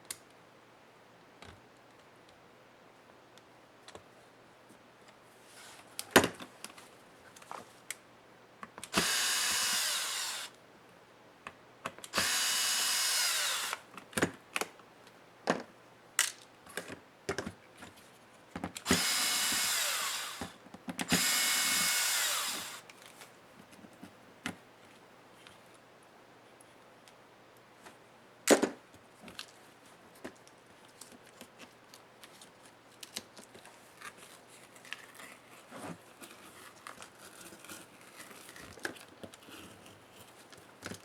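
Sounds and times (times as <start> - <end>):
electric screwdriver whining: 8.8 - 10.5, 12.1 - 13.8, 18.8 - 22.9.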